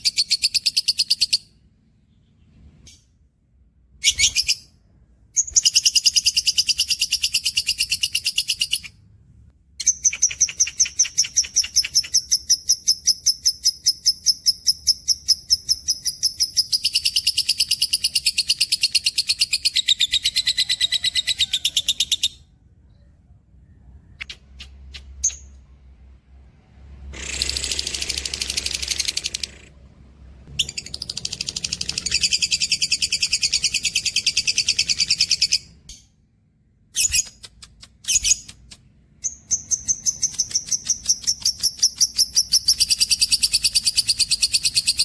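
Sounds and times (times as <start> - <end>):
cage bird singing trills: 0.0 - 3.1, 5.4 - 9.0, 9.8 - 25.6, 30.5 - 36.1, 39.2 - 45.0.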